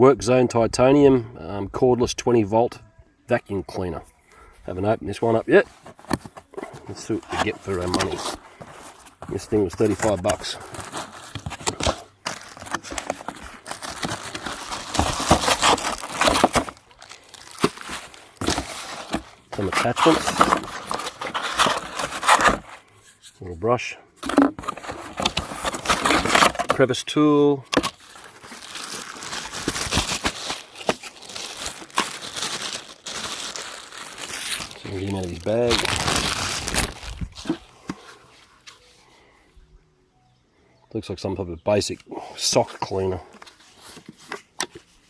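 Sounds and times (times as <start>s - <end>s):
packaging crinkling and rustling: 5.2s - 23.4s, 24.2s - 27.0s, 27.7s - 39.0s, 42.6s - 45.0s.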